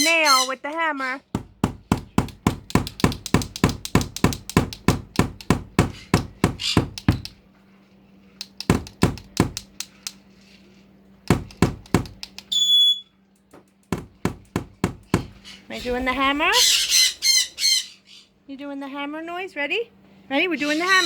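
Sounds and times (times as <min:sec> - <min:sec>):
hammer striking a nail: 0:01.3 - 0:07.4, 0:08.6 - 0:10.0, 0:11.3 - 0:12.4, 0:13.9 - 0:15.4.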